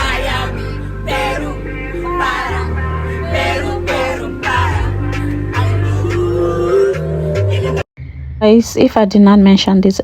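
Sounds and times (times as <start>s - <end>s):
music with heavy bass line: 0.0s - 7.8s
vocal line: 0.0s - 7.9s.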